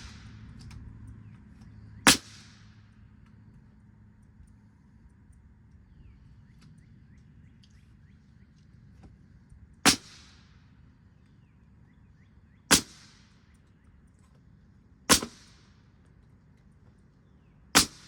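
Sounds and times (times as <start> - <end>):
nail gun shots into wood: 2.1 - 2.7, 9.9 - 10.5, 12.7 - 13.3, 15.1 - 15.7, 17.8 - 18.0.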